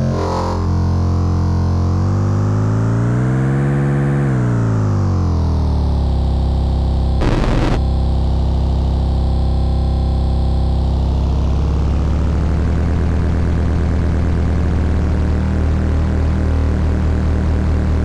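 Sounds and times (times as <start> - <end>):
burst of noise: 7.2 - 7.8
synthesizer drone: 7.2 - 8.2.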